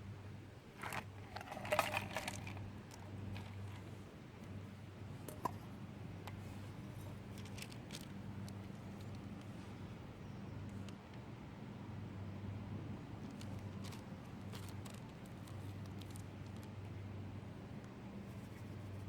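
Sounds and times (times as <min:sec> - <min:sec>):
steady low hum: 0:00.0 - 0:19.0
small objects clicking and rattling: 0:00.8 - 0:03.9, 0:07.3 - 0:09.2, 0:13.3 - 0:16.7.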